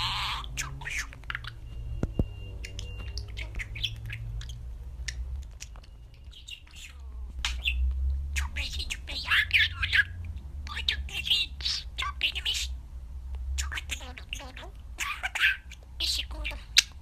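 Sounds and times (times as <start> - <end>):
budgerigar chirping and squawking: 0.0 - 1.7, 2.5 - 12.8, 13.6 - 17.0
low steady hum: 0.0 - 17.0.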